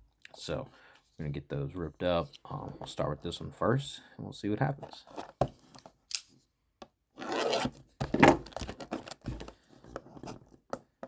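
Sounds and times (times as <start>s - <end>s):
cardboard box tearing: 7.2s - 9.6s.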